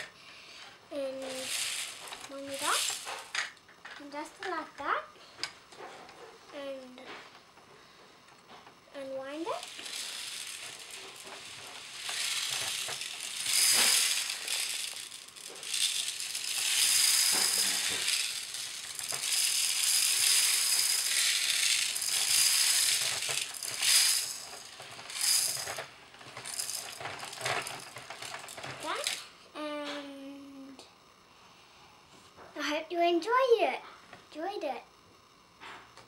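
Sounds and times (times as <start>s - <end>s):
toy cement rattling: 1.0s - 3.6s, 9.0s - 29.3s
toy cement mixer drum cranking: 1.2s - 3.5s, 9.5s - 29.2s.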